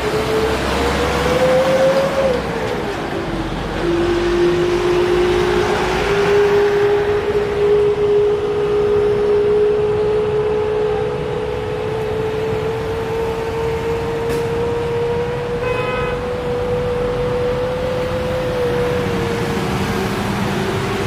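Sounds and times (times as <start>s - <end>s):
jet engines whining and roaring: 0.0s - 21.0s.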